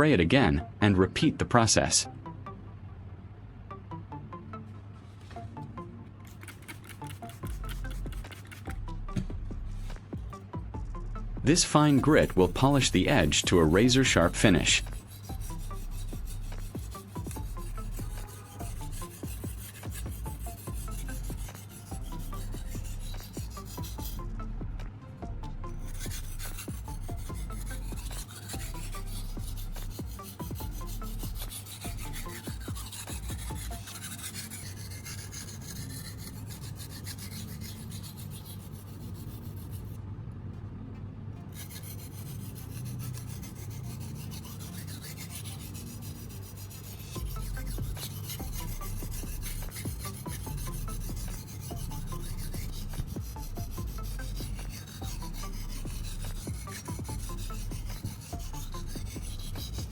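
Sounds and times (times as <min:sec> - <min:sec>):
knife scraping on sharpening stone: 0:06.3 - 0:08.7, 0:14.2 - 0:23.9, 0:25.8 - 0:39.6, 0:41.6 - 0:59.9.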